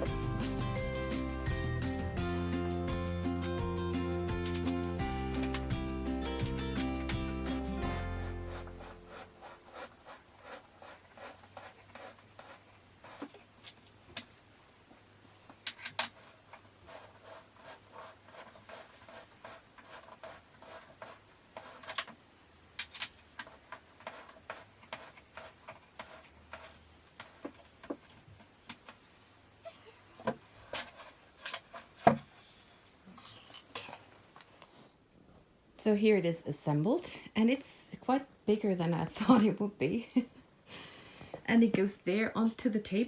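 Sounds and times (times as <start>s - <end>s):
rubbing and scraping of shelf parts: 4.4s - 22.2s, 23.1s - 35.0s.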